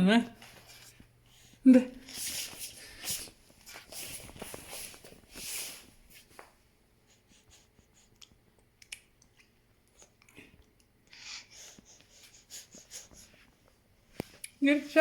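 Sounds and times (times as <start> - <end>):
baby's wet smacking clicks: 8.2 - 9.5
baby breathing in hissy puffs: 11.1 - 13.4.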